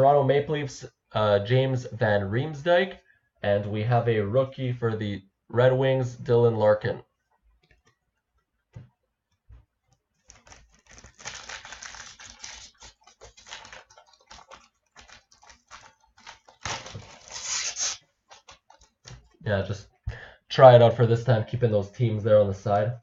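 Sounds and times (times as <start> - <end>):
cards rustling and clicking: 9.5 - 19.4
foil wrapper tearing and crinkling: 10.2 - 19.3.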